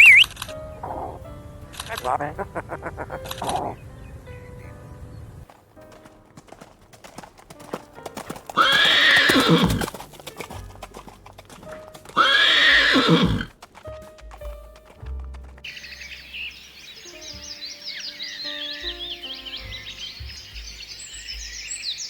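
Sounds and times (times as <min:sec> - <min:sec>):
background music: 0:00.0 - 0:22.0
hooves clattering: 0:00.0 - 0:22.0
horse whinnying: 0:08.6 - 0:10.0, 0:12.1 - 0:13.5.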